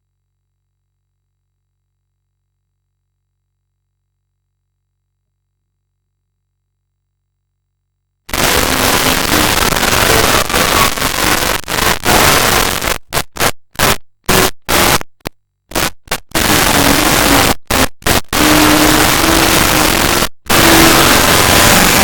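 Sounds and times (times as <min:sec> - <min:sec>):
harsh static noise: 0:08.3 - 0:22.0.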